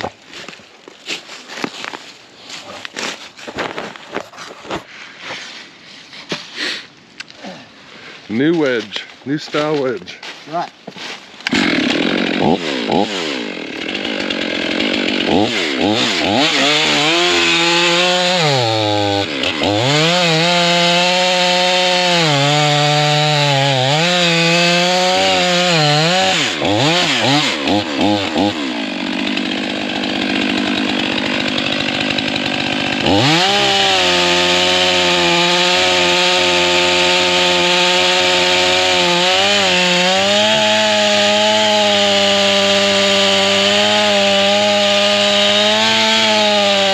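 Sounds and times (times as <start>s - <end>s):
chainsaw cutting log: 11.4s - 46.9s.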